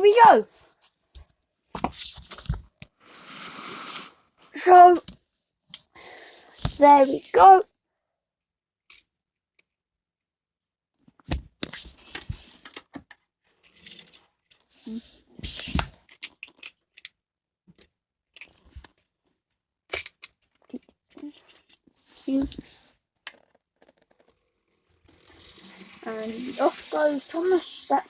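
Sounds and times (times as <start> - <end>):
plastic model parts clicking and scraping: 11.6 - 17.2, 17.8 - 19.1, 19.9 - 28.0.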